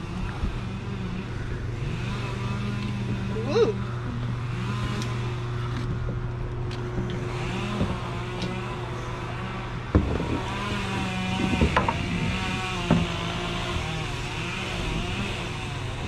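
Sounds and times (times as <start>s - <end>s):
motor humming: 0.0s - 16.0s
sharp knocks: 9.9s - 12.1s.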